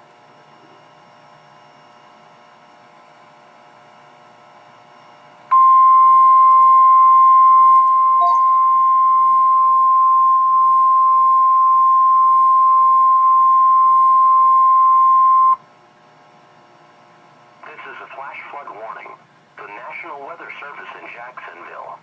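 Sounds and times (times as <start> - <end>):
faint background hum: 0.0 - 22.0
loud steady alarm tone: 5.5 - 15.6.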